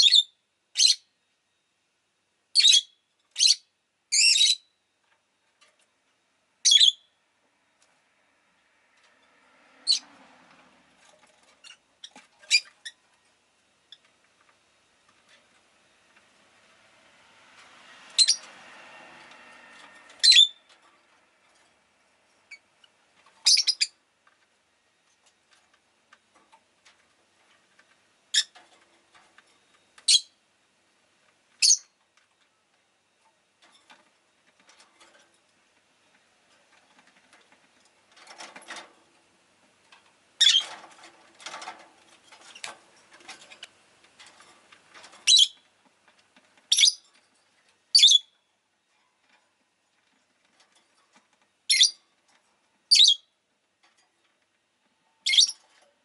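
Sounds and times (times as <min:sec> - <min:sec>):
bird high-pitched chirps: 0:00.0 - 0:01.1, 0:02.6 - 0:04.7, 0:06.6 - 0:07.1, 0:18.2 - 0:18.4, 0:20.2 - 0:20.6, 0:23.4 - 0:24.0, 0:30.1 - 0:30.3, 0:31.6 - 0:31.9, 0:45.3 - 0:45.6, 0:46.7 - 0:47.0, 0:47.9 - 0:48.3, 0:51.7 - 0:52.0, 0:52.9 - 0:53.3, 0:55.2 - 0:55.6.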